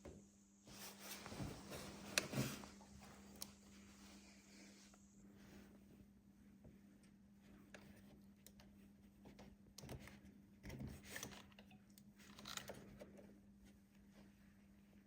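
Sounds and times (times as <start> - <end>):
low steady hum: 0.0 - 15.0
crinkling and rustling: 0.7 - 3.9.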